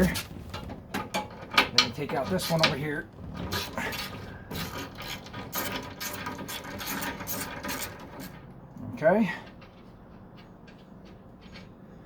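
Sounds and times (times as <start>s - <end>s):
metal scraping and rattling: 0.0s - 8.8s
hand ratchet clicking: 3.5s - 8.3s.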